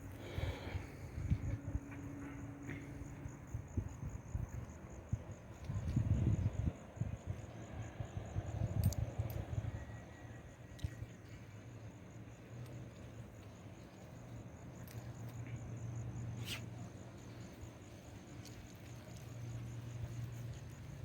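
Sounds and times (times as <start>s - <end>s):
insect trill: 0.0s - 21.0s
low steady rumble: 0.0s - 21.0s
faint clicks: 10.7s - 11.2s.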